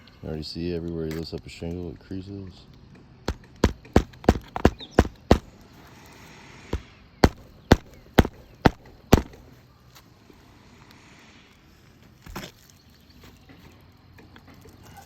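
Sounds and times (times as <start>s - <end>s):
hammer striking roofing nails: 3.3s - 5.5s, 6.8s - 9.5s.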